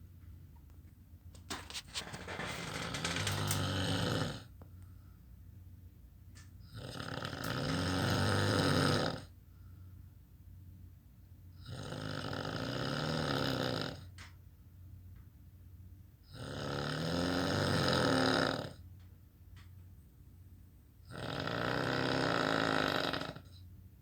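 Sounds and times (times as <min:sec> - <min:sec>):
quiet breathing: 0:09.3 - 0:10.2
person snoring: 0:21.1 - 0:23.5.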